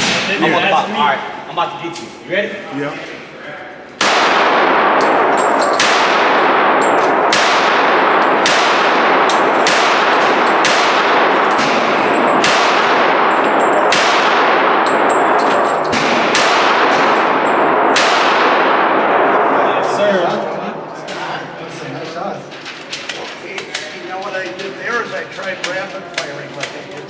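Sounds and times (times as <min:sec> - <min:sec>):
handgun shots with ringing echo: 0:04.0 - 0:19.5.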